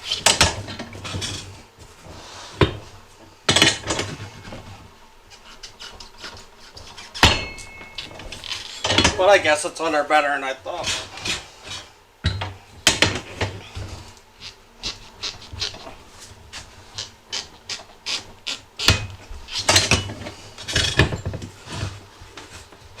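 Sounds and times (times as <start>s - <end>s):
tire changer metallic clanks: 7.2s - 9.3s.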